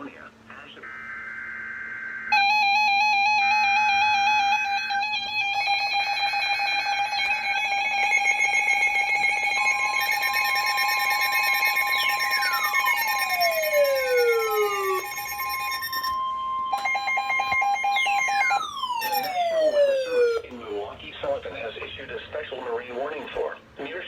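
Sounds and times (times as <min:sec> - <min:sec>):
tone sweeping downward: 0:02.4 - 0:20.5
warbling electronic tone: 0:02.4 - 0:20.5
beeping tones: 0:03.3 - 0:20.5.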